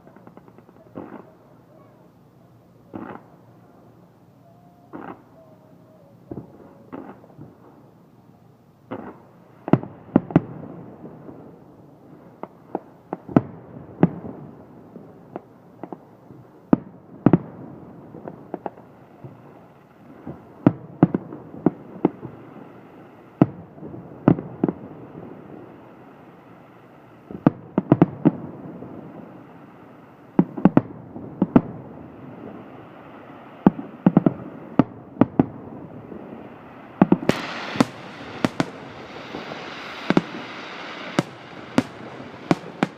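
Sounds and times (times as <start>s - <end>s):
fireworks bangs: 0.0s - 1.8s, 2.9s - 3.4s, 4.8s - 5.4s, 16.7s - 42.9s
fireworks crackle and rumble: 0.0s - 42.9s.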